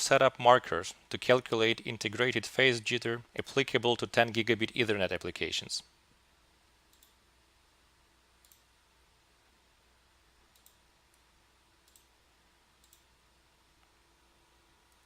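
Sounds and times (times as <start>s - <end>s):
low steady hum: 0.0s - 15.0s
faint sharp clicks: 6.9s - 7.2s, 8.4s - 8.7s, 10.5s - 12.1s, 12.8s - 13.1s, 13.8s - 14.0s.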